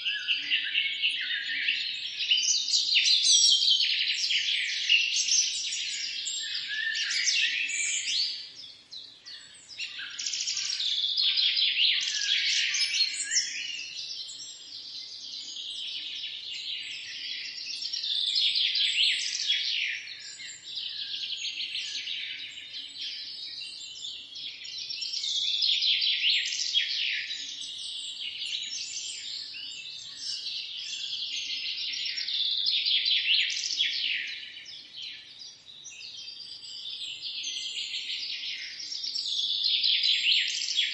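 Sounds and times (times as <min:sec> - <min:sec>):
small birds chirping: 0:00.0 - 0:40.9.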